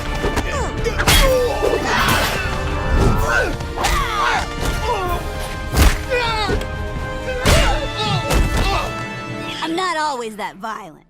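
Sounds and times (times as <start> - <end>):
dramatic background music: 0.0 - 11.0
whacks and crashes: 5.7 - 6.2.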